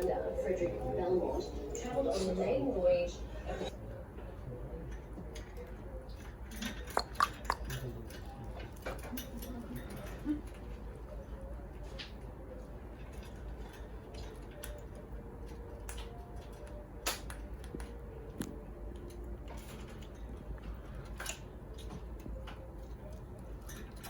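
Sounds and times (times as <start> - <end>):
steady low hum: 0.0 - 8.4.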